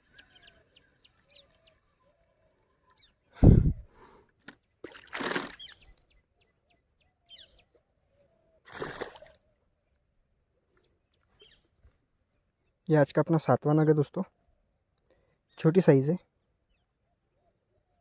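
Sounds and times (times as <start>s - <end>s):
small birds chirping: 0.0s - 18.0s
splashes in water: 4.8s - 6.0s, 8.7s - 9.4s.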